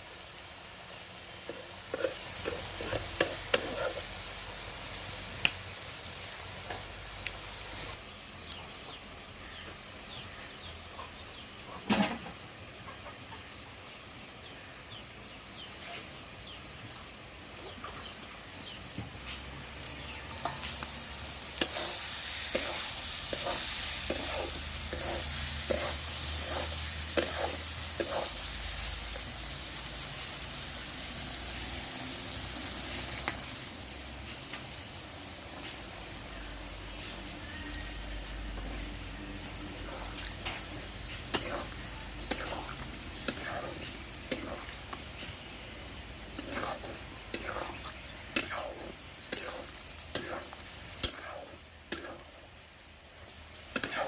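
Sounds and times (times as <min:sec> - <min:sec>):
food sizzling in a pan: 0:00.0 - 0:12.8, 0:15.2 - 0:54.0
spoon scraping a pan: 0:01.4 - 0:04.2, 0:21.6 - 0:29.3, 0:39.5 - 0:45.5, 0:46.2 - 0:52.3, 0:53.7 - 0:54.0.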